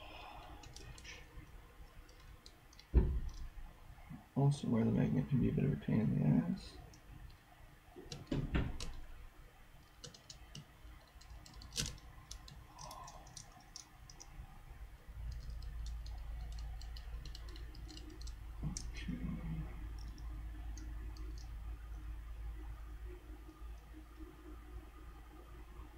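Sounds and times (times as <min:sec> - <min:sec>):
low steady hum: 0:00.0 - 0:25.9
screwdriver and tiny screws clicking: 0:09.8 - 0:14.3, 0:15.3 - 0:18.9.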